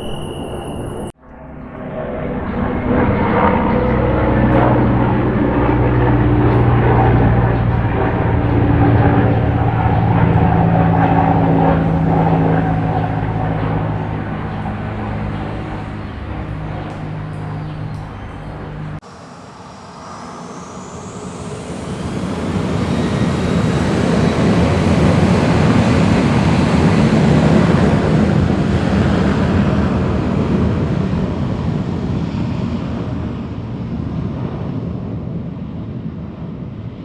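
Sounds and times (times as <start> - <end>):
high falling whine: 0.0 - 23.6
airplane flying overhead: 0.0 - 37.0
other aircraft sound: 0.0 - 37.0.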